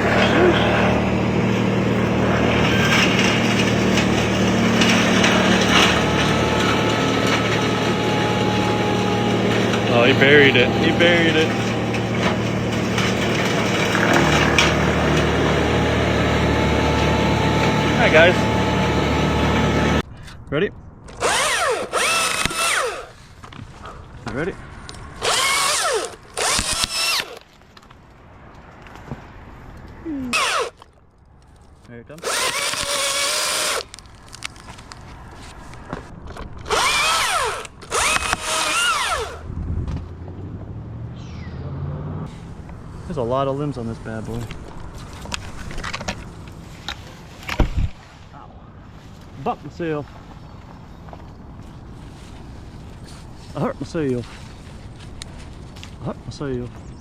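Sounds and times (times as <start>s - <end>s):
chainsaw revving: 0.0s - 20.0s, 21.2s - 23.1s, 25.2s - 27.4s, 30.3s - 30.8s, 32.2s - 33.9s, 36.7s - 39.4s
small engine running: 0.0s - 20.0s, 25.2s - 27.4s, 30.2s - 30.8s, 32.2s - 33.9s, 36.7s - 39.4s.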